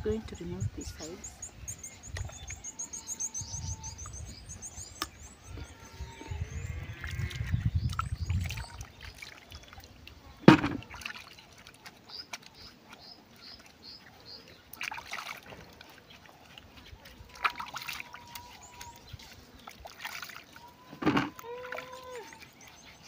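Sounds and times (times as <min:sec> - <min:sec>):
birds chirping: 0:00.0 - 0:23.0
water sloshing in basin: 0:06.4 - 0:23.0.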